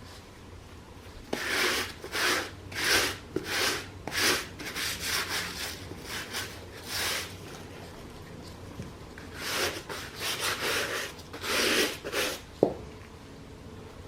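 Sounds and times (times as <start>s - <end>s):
rubbing strokes on a sneaker: 1.3s - 7.5s, 9.2s - 12.5s.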